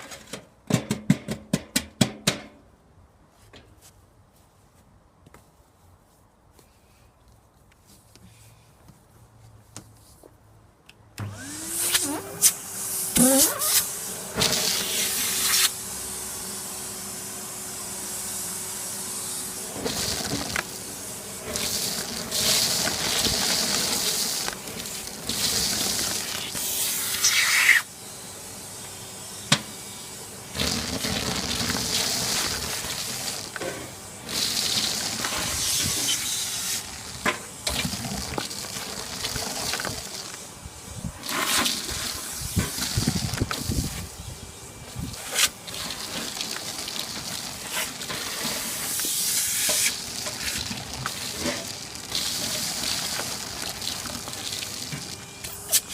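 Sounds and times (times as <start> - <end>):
vacuum cleaner motor whine: 11.2 - 55.9
loud hissing suction: 11.8 - 16.0, 16.7 - 28.0, 28.6 - 44.2, 45.0 - 55.0.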